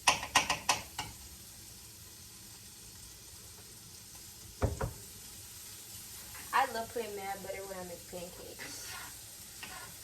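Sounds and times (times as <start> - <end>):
butter sizzling in a frying pan: 0.0 - 10.0
dull knock: 4.6 - 5.0.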